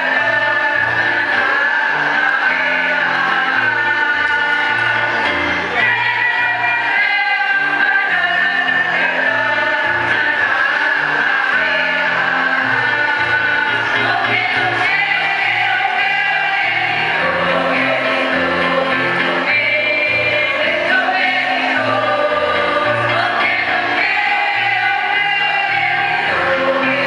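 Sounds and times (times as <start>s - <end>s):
choir singing: 0.0s - 27.0s.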